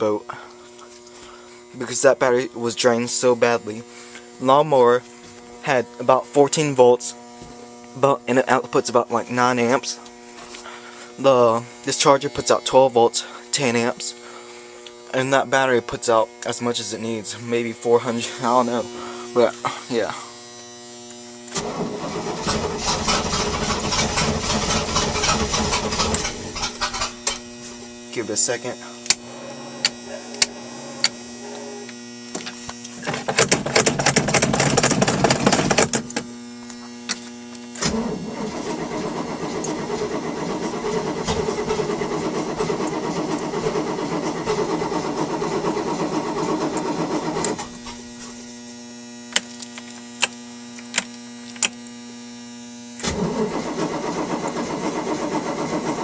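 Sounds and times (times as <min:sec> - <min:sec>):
steady electrical hum: 0:00.0 - 0:56.0
boat engine starter cranking: 0:21.5 - 0:27.4, 0:33.2 - 0:36.2, 0:37.8 - 0:47.8, 0:53.0 - 0:56.0.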